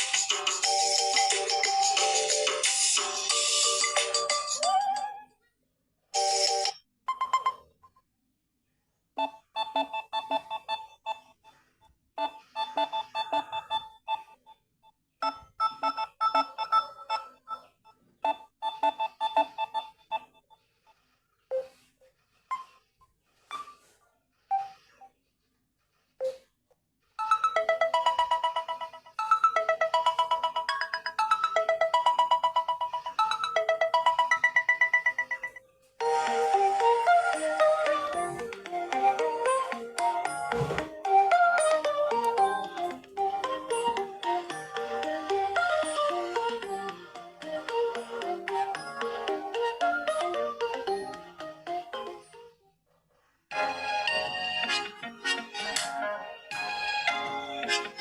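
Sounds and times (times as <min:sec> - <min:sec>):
electronic ringtone melodies: 0:00.0 - 0:05.2, 0:06.2 - 0:07.8, 0:12.2 - 0:14.4, 0:15.2 - 0:17.7, 0:27.2 - 0:52.6.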